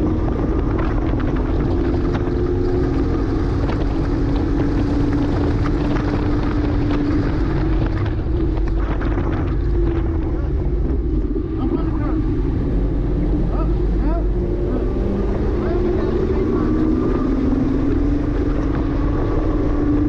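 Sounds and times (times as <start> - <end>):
car engine pulling hard: 0.0 - 20.0
road and wind noise: 0.0 - 20.0.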